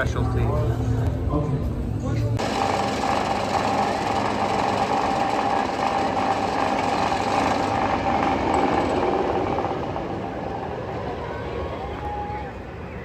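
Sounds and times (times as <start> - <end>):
fast mechanical rattle: 2.4 - 9.5.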